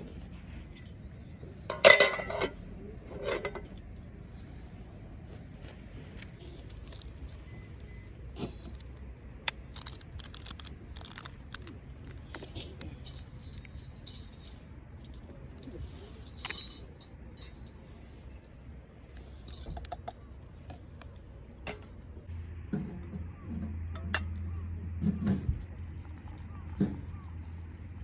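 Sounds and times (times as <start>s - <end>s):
small metal objects clinking: 8.4s - 17.8s.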